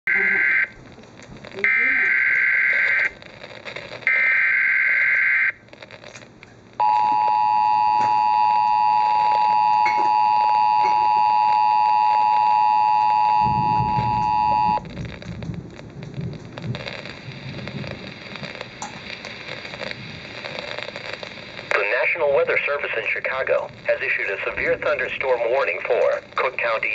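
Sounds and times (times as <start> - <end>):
faint radio noise: 0.1 - 15.4, 16.6 - 26.9
two-tone attention signal: 6.8 - 14.8
digital header tones: 6.8 - 14.9.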